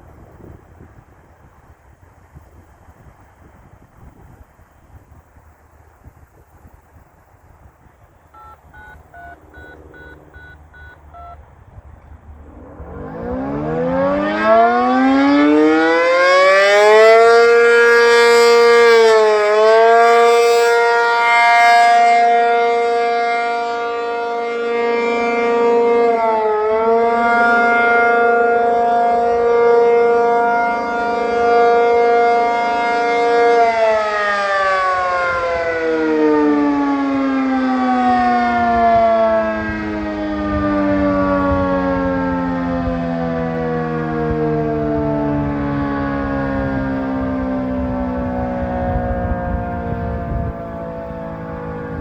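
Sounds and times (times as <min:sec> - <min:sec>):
radio activation beeps: 0:08.3 - 0:11.4
tornado siren wailing: 0:08.4 - 0:11.6, 0:12.2 - 0:52.0.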